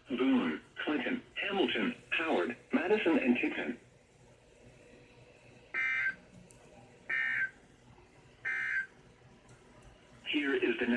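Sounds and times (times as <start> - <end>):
digital data tone bursts: 8.5 - 8.9.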